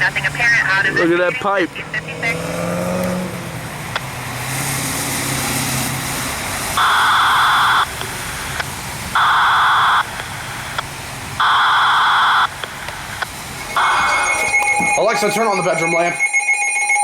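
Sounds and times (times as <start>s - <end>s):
vehicle engine running: 0.0s - 11.7s
buzzing data tones: 13.6s - 17.0s.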